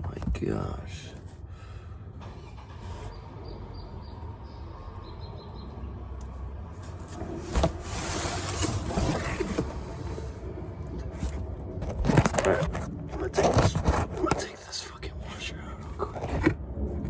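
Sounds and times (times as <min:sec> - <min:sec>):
low steady hum: 0:00.0 - 0:17.0
rustling and scraping: 0:06.8 - 0:17.0.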